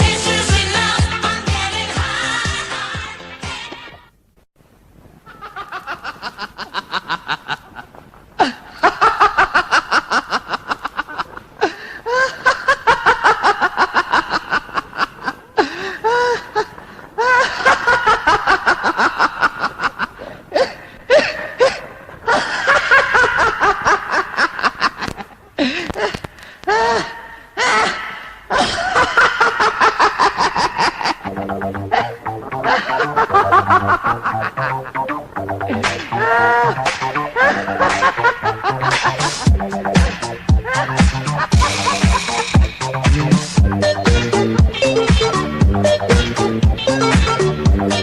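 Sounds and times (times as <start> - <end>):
person laughing hard: 5.2 - 43.0.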